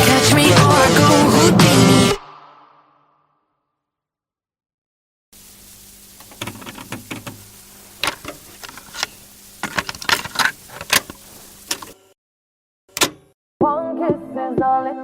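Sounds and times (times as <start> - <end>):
steady hiss: 5.4 - 12.1
sharp clicks and rattles: 6.2 - 12.0.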